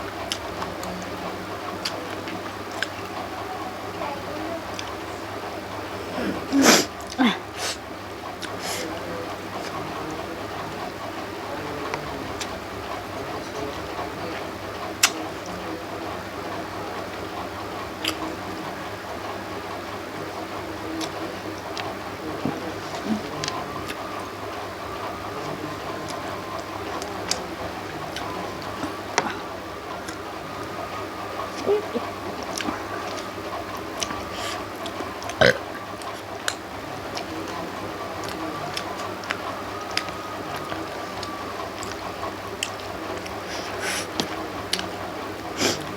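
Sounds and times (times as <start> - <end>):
person chewing food: 0.2 - 0.5, 32.4 - 36.6, 38.2 - 44.9.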